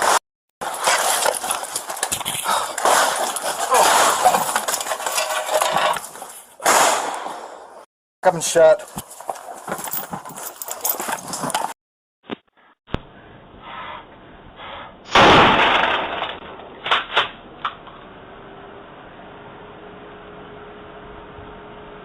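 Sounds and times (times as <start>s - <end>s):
loud bang: 15.1s - 16.4s
sharp cracks: 15.1s - 17.4s.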